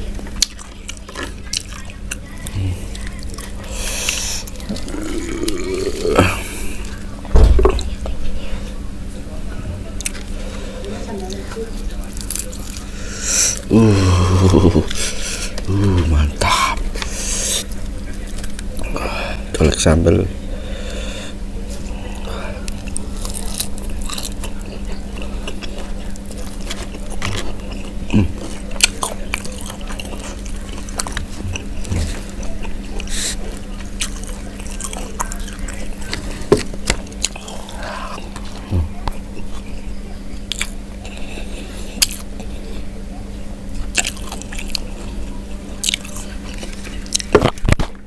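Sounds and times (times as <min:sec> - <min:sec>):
chewing and biting food: 0:00.0 - 0:07.0, 0:11.3 - 0:13.7, 0:21.7 - 0:42.9, 0:43.7 - 0:48.0.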